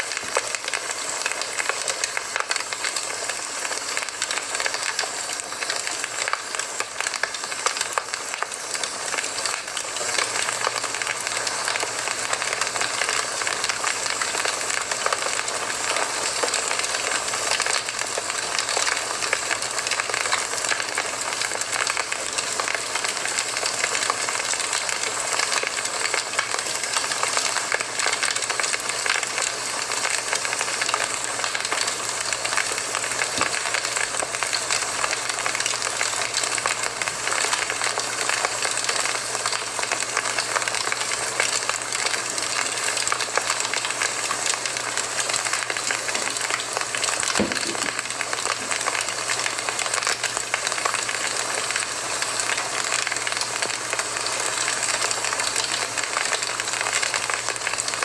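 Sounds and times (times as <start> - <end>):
soft hiss of fire: 0.0 - 56.7
campfire crackling and popping: 11.4 - 53.8.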